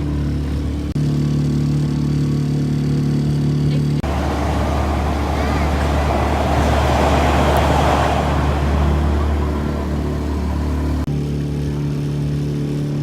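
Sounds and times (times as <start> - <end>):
rushing water and wind: 4.0 - 11.0
motorboat engine running: 4.0 - 11.1.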